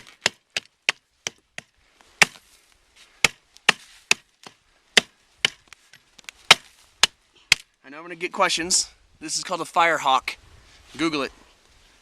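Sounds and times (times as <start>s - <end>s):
hatchet chopping wood: 0.0s - 2.4s, 3.2s - 5.8s, 6.5s - 7.7s.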